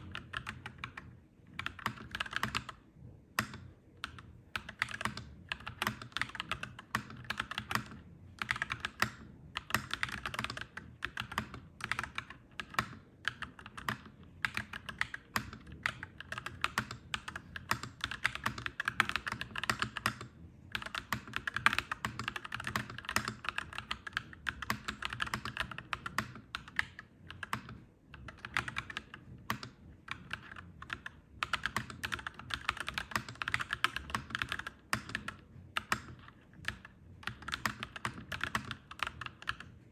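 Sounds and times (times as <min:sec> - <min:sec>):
mechanical keyboard typing: 0:00.0 - 0:02.8, 0:03.4 - 0:39.8.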